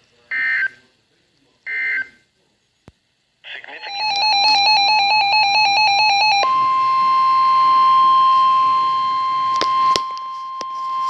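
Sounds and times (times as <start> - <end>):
rapid pulsing beep: 3.8 - 11.0
steady warning alarm tone: 3.8 - 11.0.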